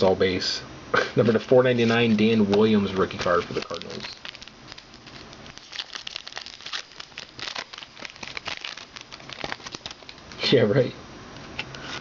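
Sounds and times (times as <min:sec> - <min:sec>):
trading cards rustling and snapping: 0:01.3 - 0:10.4, 0:11.6 - 0:12.0.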